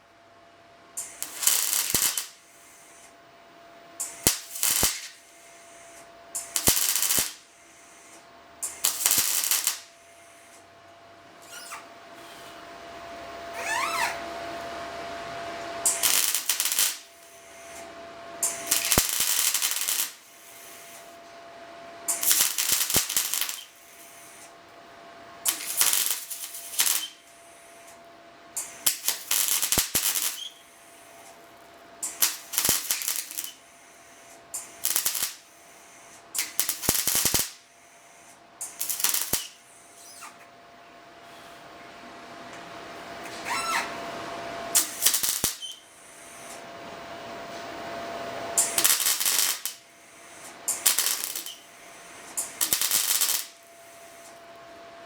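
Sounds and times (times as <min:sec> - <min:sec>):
welder crackling: 0:01.0 - 0:03.0, 0:04.0 - 0:07.4, 0:08.0 - 0:10.6, 0:15.8 - 0:21.2, 0:22.1 - 0:24.5, 0:25.4 - 0:27.9, 0:28.6 - 0:31.4, 0:32.0 - 0:33.6, 0:34.2 - 0:35.5, 0:36.4 - 0:37.6, 0:38.6 - 0:40.3, 0:44.7 - 0:46.6, 0:48.6 - 0:54.4.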